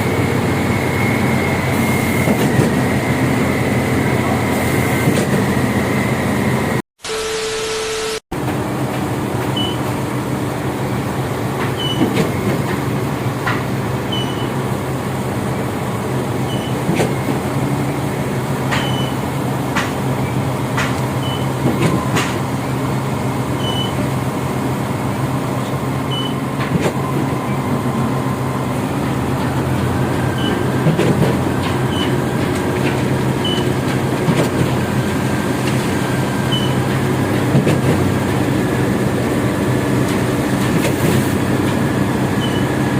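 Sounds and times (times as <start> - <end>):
diesel machinery engine drone: 0.0 - 42.9
sharp knocks and clanks: 18.7 - 19.1, 19.7 - 22.5, 29.4 - 35.8, 36.9 - 38.1.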